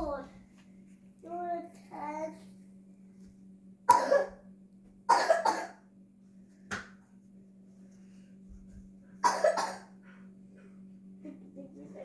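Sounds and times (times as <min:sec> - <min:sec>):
steady low hum: 0:00.0 - 0:12.0
person coughing: 0:03.9 - 0:04.4, 0:05.1 - 0:05.8, 0:09.2 - 0:09.9.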